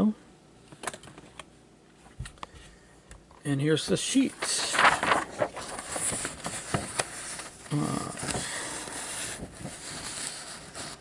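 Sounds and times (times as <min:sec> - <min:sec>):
paper rustling: 0:04.0 - 0:11.0.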